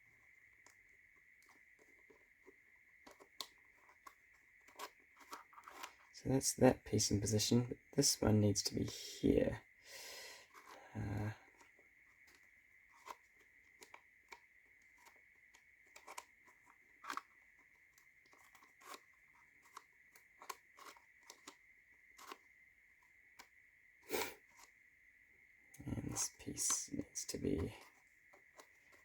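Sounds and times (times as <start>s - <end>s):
faint high whine: 0.0s - 29.0s
wooden tiles clicking and tapping: 1.4s - 6.1s, 15.0s - 21.6s.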